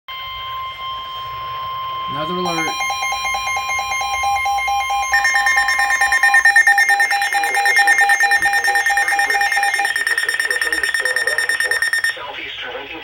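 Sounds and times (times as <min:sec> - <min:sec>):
rapid pulsing electronic beeps: 0:00.2 - 0:12.2
higher beeping tone: 0:00.7 - 0:12.2
steady alert tone: 0:02.1 - 0:12.1.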